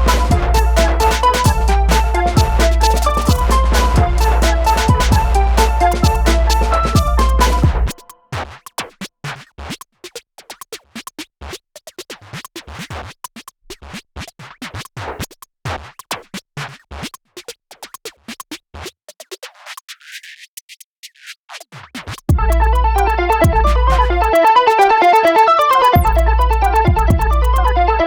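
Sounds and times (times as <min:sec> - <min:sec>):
scratchy strokes: 0:00.0 - 0:08.0
background music: 0:00.0 - 0:08.3, 0:22.4 - 0:28.0.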